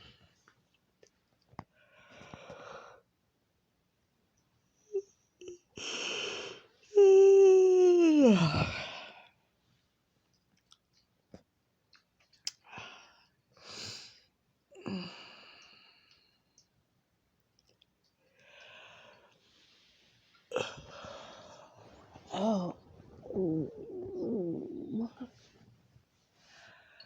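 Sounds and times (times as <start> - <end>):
quiet breaths: 0.0 - 3.1, 12.6 - 16.8, 18.0 - 27.0
woman yawning aloud: 7.0 - 9.0
soft mouth clicks: 11.9 - 12.7.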